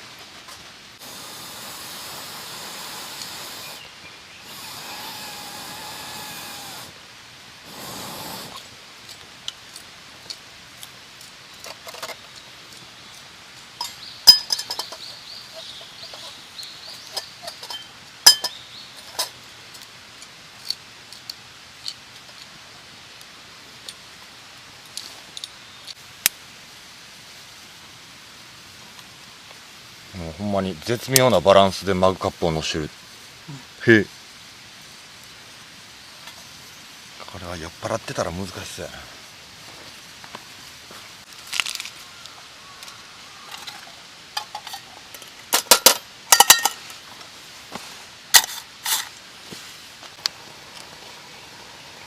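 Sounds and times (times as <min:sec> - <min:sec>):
rustling noise: 0:00.0 - 0:01.0, 0:24.8 - 0:25.6, 0:39.2 - 0:42.1, 0:46.8 - 0:50.2
metal parts clinking together: 0:13.8 - 0:15.0, 0:17.1 - 0:19.3, 0:43.5 - 0:46.9.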